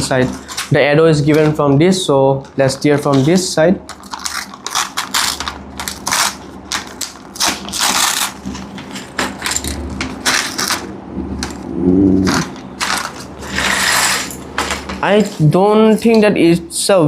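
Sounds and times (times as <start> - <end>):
plastic bag crinkling: 3.9 - 11.6, 12.3 - 14.9.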